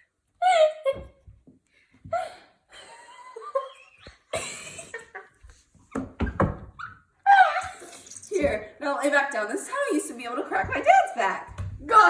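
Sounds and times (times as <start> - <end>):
people giggling and laughing: 2.2 - 5.5.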